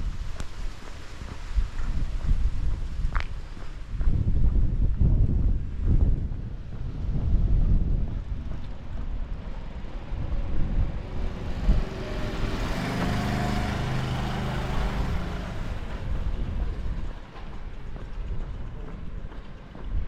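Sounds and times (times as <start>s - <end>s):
wind buffeting microphone: 0.0s - 20.0s
vehicle driving past: 9.7s - 16.9s.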